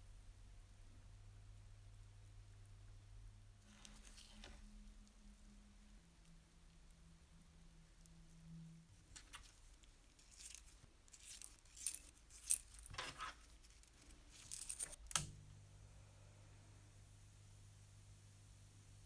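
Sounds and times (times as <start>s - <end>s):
small metal parts clinking: 9.2s - 15.0s.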